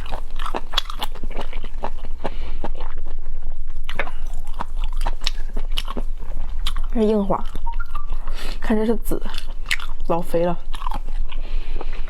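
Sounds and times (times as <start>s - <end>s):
biting and chewing crunches: 0.0s - 12.0s
wet mouth clicking: 3.9s - 8.6s.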